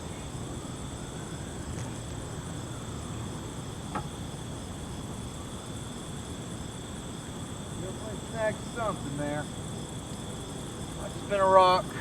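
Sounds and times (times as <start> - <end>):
night insects trilling: 0.0 - 12.0.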